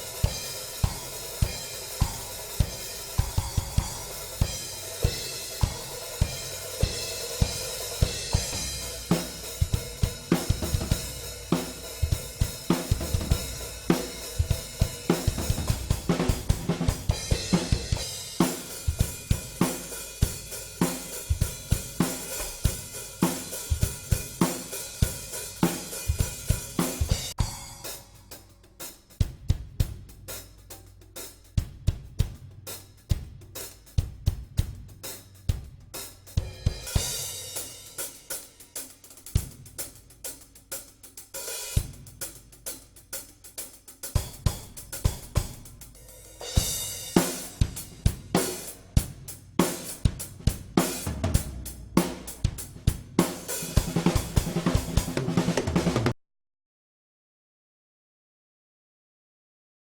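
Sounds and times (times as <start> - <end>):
hi-hat strokes: 0.0 - 55.2
snare and bass drum hits: 46.6 - 56.2.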